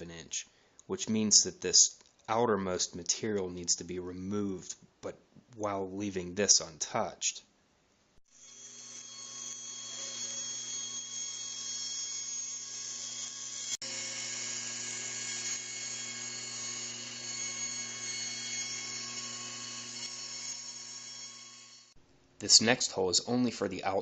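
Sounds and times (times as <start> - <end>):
power tool cutting wood: 8.3 - 22.0.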